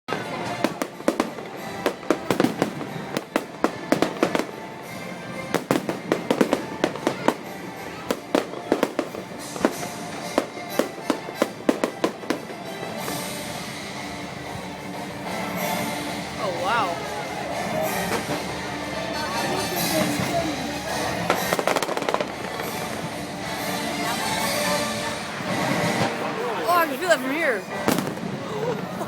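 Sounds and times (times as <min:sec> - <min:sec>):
fireworks bangs and crackles: 0:00.1 - 0:29.0
show music: 0:26.6 - 0:28.2.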